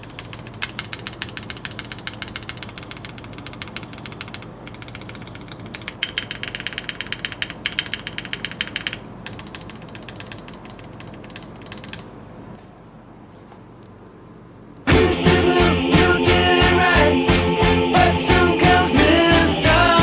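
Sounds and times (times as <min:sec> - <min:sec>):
mechanical keyboard typing: 0:00.0 - 0:12.2.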